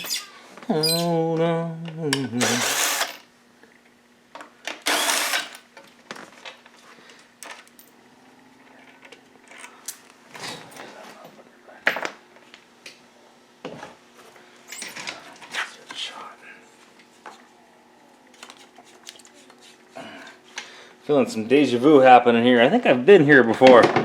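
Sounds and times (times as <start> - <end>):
power driver burst: 2.4 - 3.2, 4.8 - 5.6.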